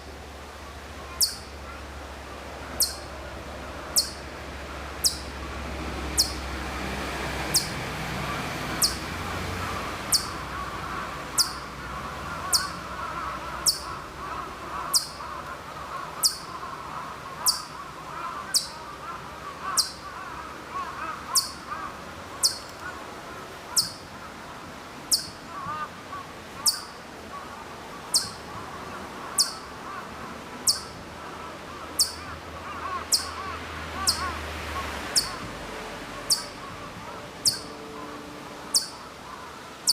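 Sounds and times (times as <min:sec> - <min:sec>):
chipmunk chip calls: 0:01.1 - 0:01.8, 0:02.7 - 0:03.1, 0:03.9 - 0:04.3, 0:04.9 - 0:05.4, 0:06.1 - 0:06.4, 0:07.5 - 0:07.8, 0:08.8 - 0:09.1, 0:10.0 - 0:16.6, 0:17.4 - 0:18.8, 0:19.6 - 0:20.0, 0:21.0 - 0:22.8, 0:23.7 - 0:24.1, 0:25.1 - 0:25.8, 0:26.6 - 0:27.0, 0:28.1 - 0:28.6, 0:29.2 - 0:30.0, 0:30.6 - 0:31.0, 0:32.0 - 0:34.4, 0:35.1 - 0:35.5, 0:36.3 - 0:37.7, 0:38.7 - 0:39.1.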